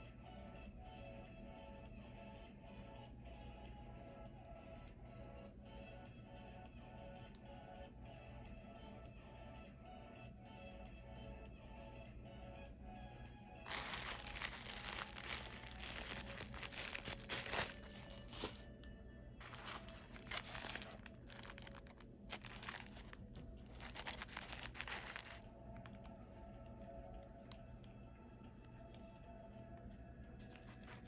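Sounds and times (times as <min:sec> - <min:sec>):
background music: 0:00.0 - 0:31.0
packaging being torn and crinkled: 0:13.7 - 0:18.7, 0:19.4 - 0:26.0.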